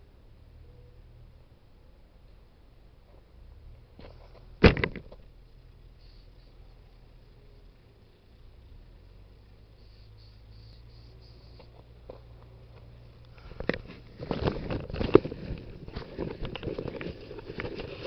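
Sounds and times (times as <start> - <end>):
faint low hum: 0.0 - 18.0
close rustling and crackling: 10.6 - 18.0.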